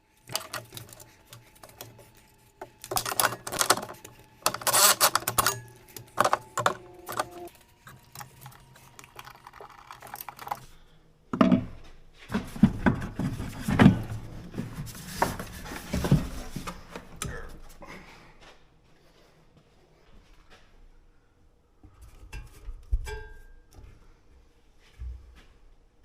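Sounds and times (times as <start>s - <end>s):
tools and metal parts clinking: 2.7s - 7.5s.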